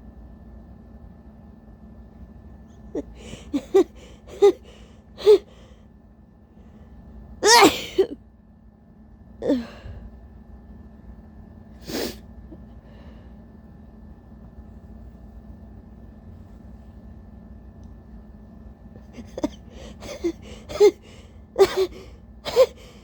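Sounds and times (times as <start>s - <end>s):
breath: 3.1s - 5.9s, 9.5s - 10.2s, 11.8s - 13.5s, 19.7s - 23.0s
woman gasping before sneeze: 7.4s - 8.1s, 19.8s - 23.0s
woman sneezing: 7.4s - 8.2s, 19.2s - 21.0s, 21.6s - 23.0s.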